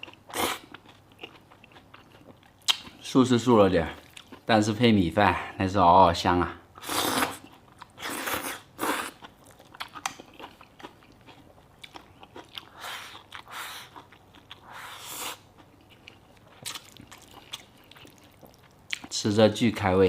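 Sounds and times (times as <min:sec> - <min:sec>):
person chewing and biting: 0:00.0 - 0:03.0, 0:06.8 - 0:19.1.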